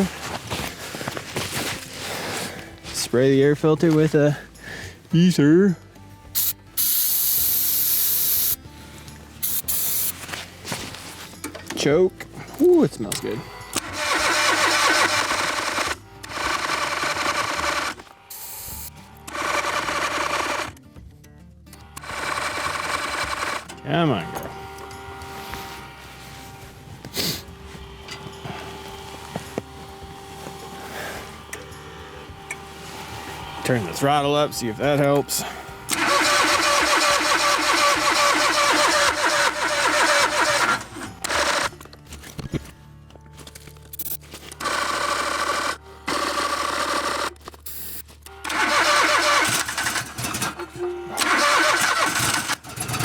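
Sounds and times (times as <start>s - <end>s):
engine cranking by electric starter: 6.4s - 8.6s, 12.5s - 20.8s, 21.7s - 42.4s, 44.4s - 53.0s.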